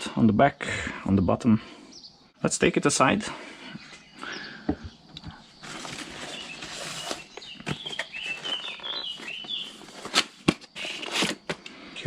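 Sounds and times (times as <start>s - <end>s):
bird chirping: 0.0s - 12.0s
boxes rustling and knocking: 4.7s - 11.7s.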